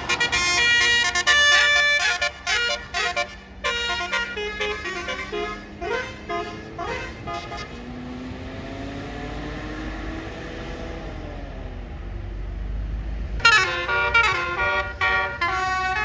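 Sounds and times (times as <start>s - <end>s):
bus horn playing melody: 0.0s - 8.0s, 13.4s - 16.0s
bus engine: 0.0s - 16.0s.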